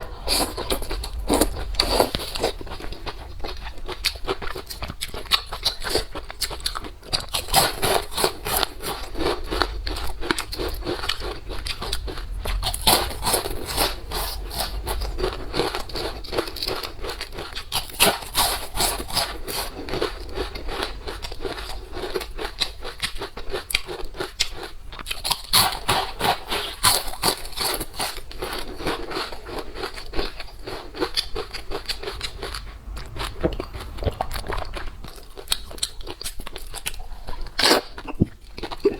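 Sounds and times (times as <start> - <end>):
scrapes: 0.0 - 3.8, 29.5 - 36.9.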